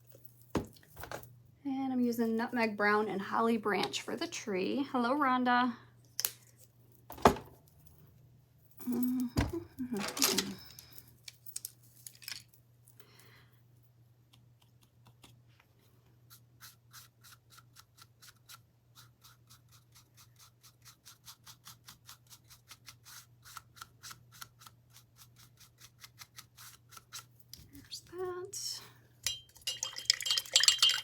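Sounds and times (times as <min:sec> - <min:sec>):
low steady hum: 0:27.6 - 0:31.0.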